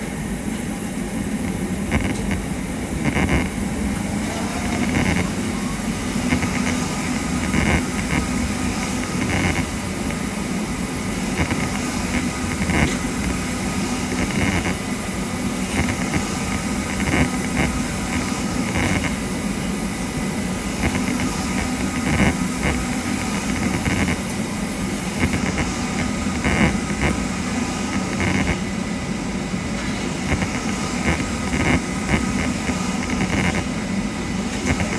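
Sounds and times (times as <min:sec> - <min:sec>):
machine cutting sounds: 0:00.0 - 0:25.7
milling machine humming: 0:00.0 - 0:34.9.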